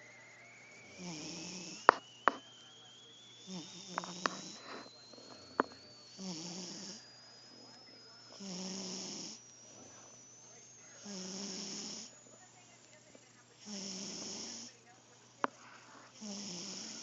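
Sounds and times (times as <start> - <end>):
sharp clicks: 0.0 - 8.4
cat snoring: 0.8 - 2.4, 3.4 - 7.6, 8.3 - 10.2, 11.0 - 12.1, 13.6 - 14.8, 15.6 - 17.0.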